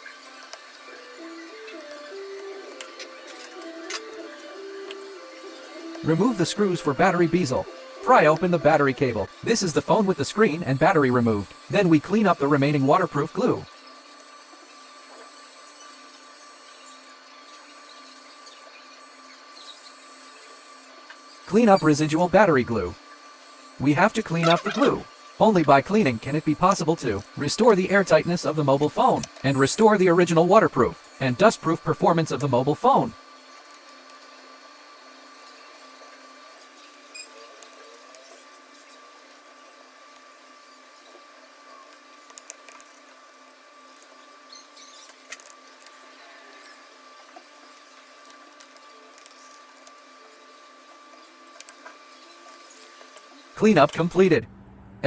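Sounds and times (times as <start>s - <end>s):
small tool whirring: 0.0s - 31.9s
equipment hum: 0.4s - 33.2s, 53.5s - 55.0s.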